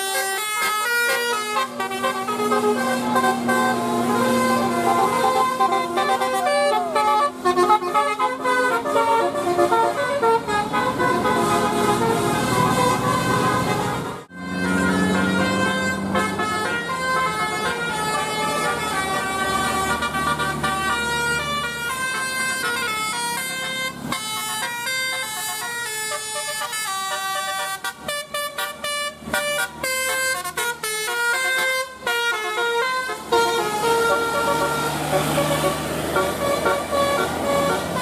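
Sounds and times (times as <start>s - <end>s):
bus horn playing a melody: 0.0s - 38.0s.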